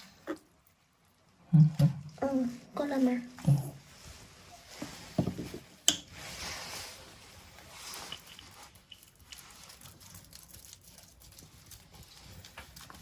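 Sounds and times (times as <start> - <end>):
wet fur squishing: 6.6 - 13.0.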